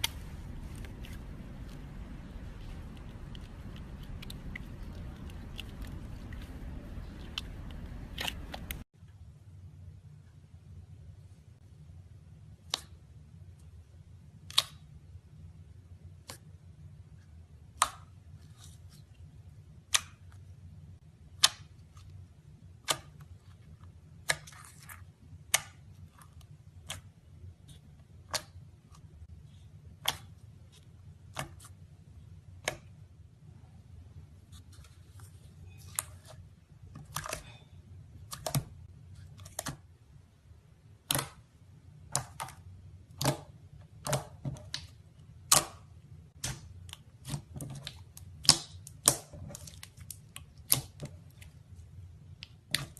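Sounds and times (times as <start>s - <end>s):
soft crackles: 0.0s - 8.9s
faint low hum: 0.0s - 52.9s.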